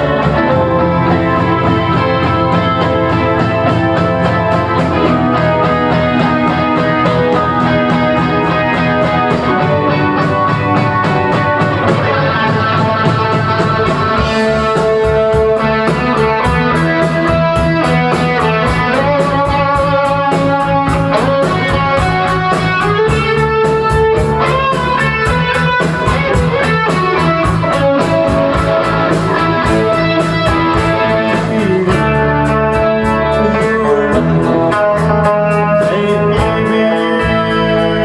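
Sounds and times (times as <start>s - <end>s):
bass: 0.0s - 38.0s
drums with cymbal beat: 0.0s - 38.0s
electric guitars: 0.0s - 38.0s.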